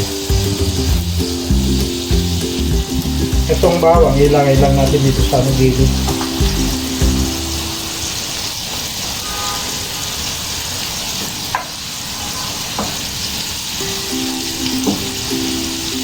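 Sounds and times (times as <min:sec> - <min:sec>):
background music: 0:00.0 - 0:08.0, 0:13.8 - 0:16.0
steak sizzling in a frying pan: 0:00.0 - 0:16.0.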